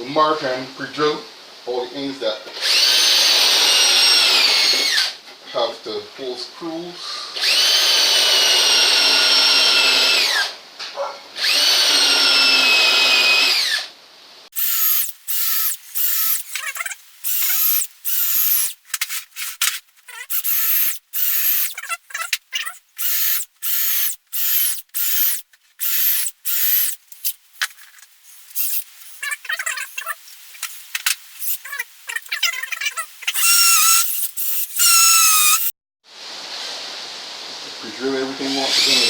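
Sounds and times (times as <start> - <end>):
power drill whining: 11.4 - 13.9, 14.6 - 27.4, 28.3 - 35.7.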